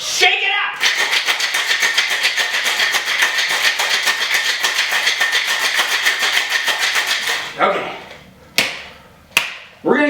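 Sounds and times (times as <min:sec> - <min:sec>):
ice rattling in cocktail shaker: 0:00.8 - 0:07.6.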